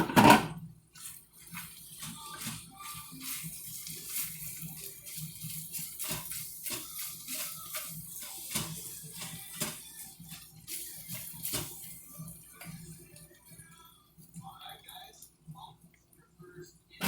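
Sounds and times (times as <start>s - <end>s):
metal utensil knocking and scraping: 0.0s - 0.6s.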